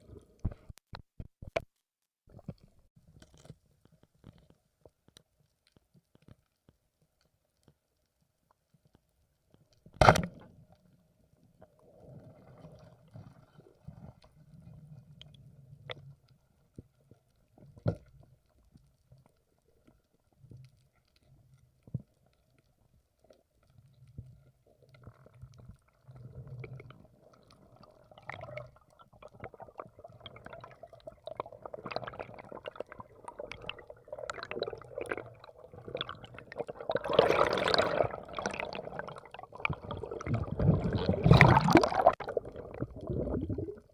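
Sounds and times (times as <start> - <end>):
faint underwater clicks: 12.5 - 43.9
water noise: 25.2 - 43.9.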